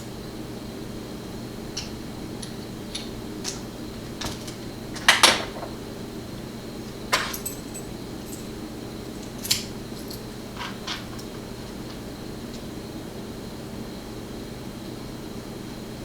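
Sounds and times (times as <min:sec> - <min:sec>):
steady low hum: 0:00.0 - 0:16.0
metal parts clinking: 0:07.1 - 0:08.5, 0:09.2 - 0:12.0.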